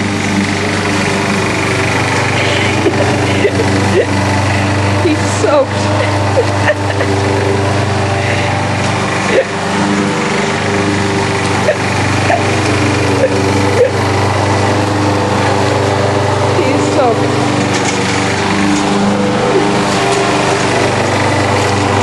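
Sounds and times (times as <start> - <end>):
lawn mower engine running: 0.0 - 22.0
heavy rain hissing: 1.7 - 10.9.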